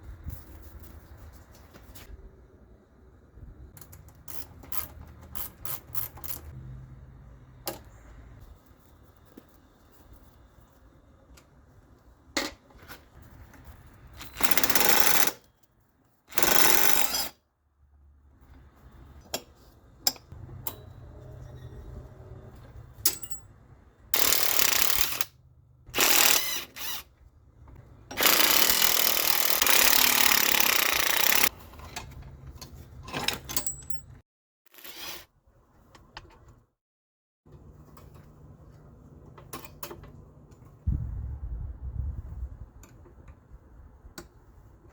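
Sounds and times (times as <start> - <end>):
handheld power tool bursts: 14.4 - 15.4, 16.3 - 17.4, 24.2 - 25.3, 26.0 - 27.1, 28.1 - 31.5.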